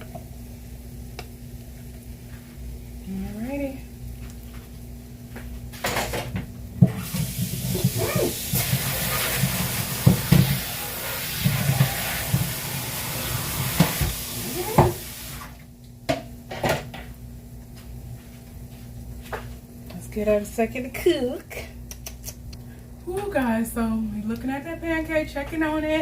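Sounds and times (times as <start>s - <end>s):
tap running water: 6.1s - 15.6s.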